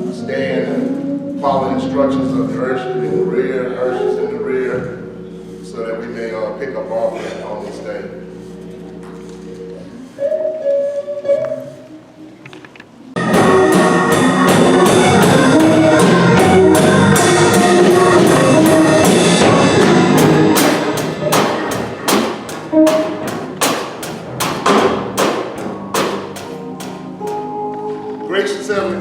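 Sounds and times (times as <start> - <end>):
instrumental music with drums: 13.2 - 28.3.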